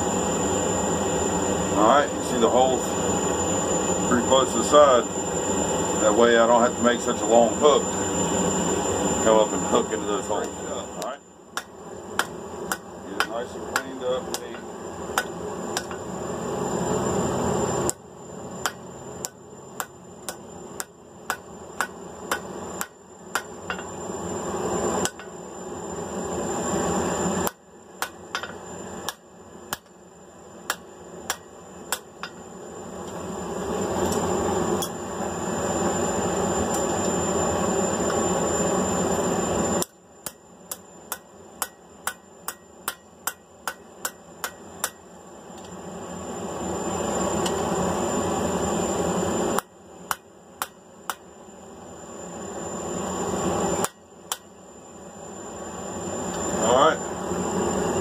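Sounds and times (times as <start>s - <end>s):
hammer striking steel on anvil: 11.0s - 16.1s, 18.6s - 24.0s, 25.0s - 25.3s, 27.4s - 30.0s, 30.7s - 32.4s, 39.8s - 45.0s, 49.6s - 51.2s, 53.8s - 54.5s.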